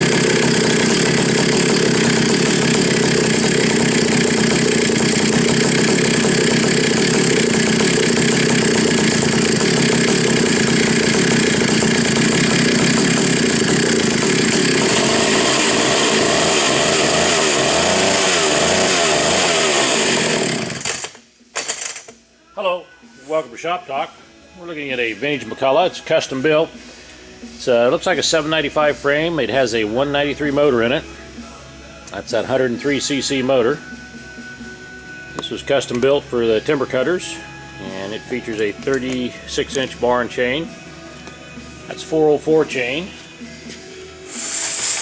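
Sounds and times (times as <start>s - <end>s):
chainsaw running loud: 0.0s - 21.2s, 44.2s - 45.0s.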